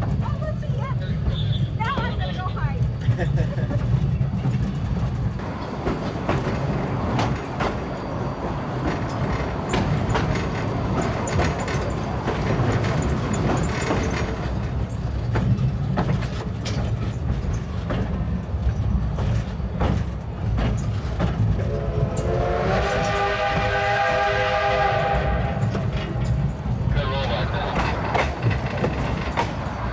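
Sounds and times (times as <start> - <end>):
train rumble: 0.0 - 29.9
wheels clattering over rails: 0.0 - 29.9
steam whistle blast: 21.7 - 25.7.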